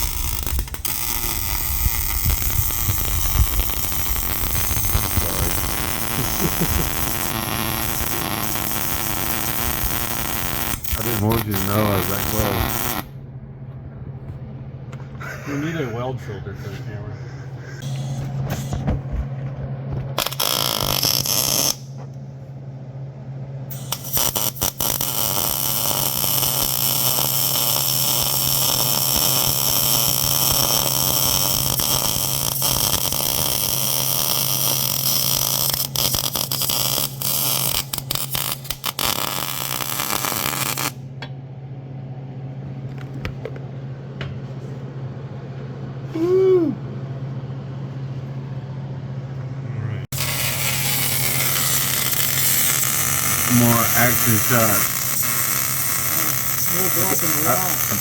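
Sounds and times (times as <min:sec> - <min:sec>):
arc welding crackling: 0:00.0 - 0:13.2, 0:20.1 - 0:22.0, 0:23.7 - 0:41.0, 0:50.1 - 0:58.0
steady low hum: 0:00.0 - 0:58.0.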